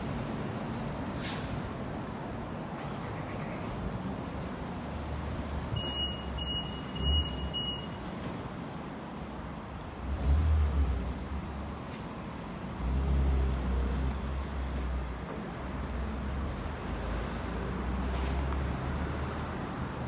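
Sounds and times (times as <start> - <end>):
city street traffic: 0.0 - 20.0
short high beeps: 5.8 - 7.9.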